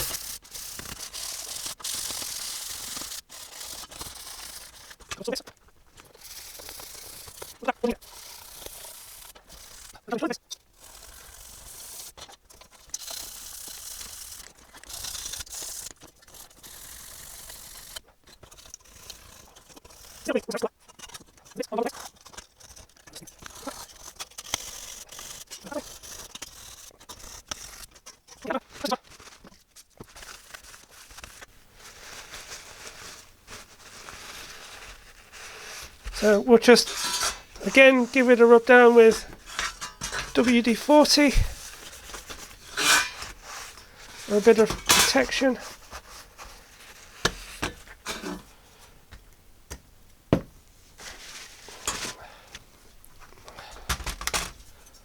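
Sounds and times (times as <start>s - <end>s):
sanding block scratching metal: 0.0s - 5.0s, 6.2s - 10.2s, 10.8s - 12.2s, 12.8s - 18.0s, 35.4s - 45.8s
metal scraping hisses: 35.5s - 45.7s
sheet metal clicks and clinks: 39.1s - 40.5s.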